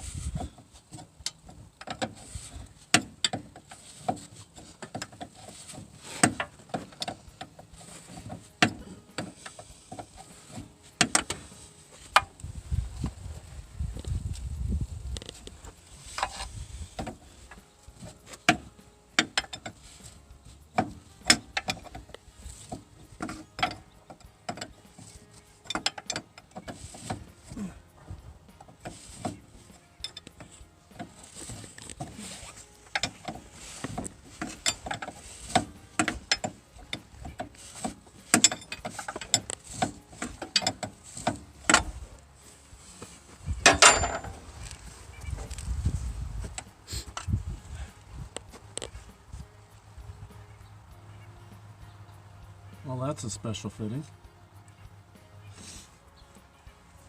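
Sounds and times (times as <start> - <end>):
hydraulic hose fittings handled: 0.0 - 49.2
metal clicks of hand tools: 0.6 - 12.5, 15.1 - 27.7, 28.5 - 42.0, 43.6 - 44.8.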